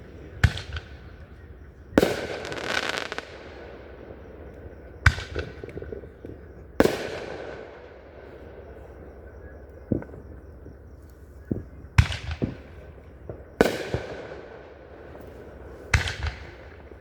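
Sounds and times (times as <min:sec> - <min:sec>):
fireworks booming: 0:00.0 - 0:17.0
fireworks crackling: 0:01.9 - 0:08.2.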